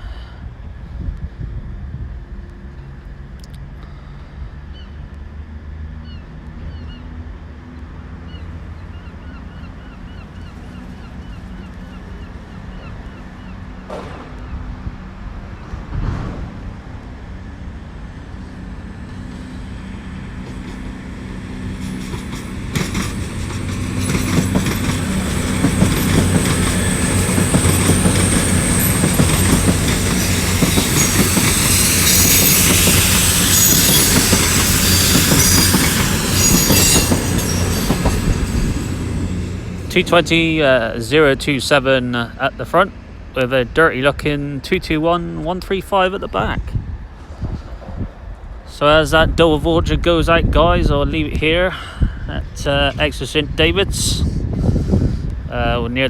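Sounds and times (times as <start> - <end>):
diesel train hum: 0.0 - 56.0
rail clatter: 13.8 - 14.8, 18.4 - 41.8
high wheel squeal: 19.0 - 41.2.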